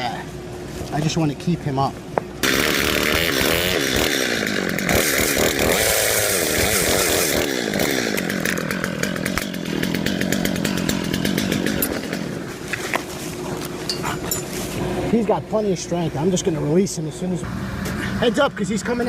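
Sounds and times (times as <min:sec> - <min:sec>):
chainsaw cutting wood: 0:02.4 - 0:14.9.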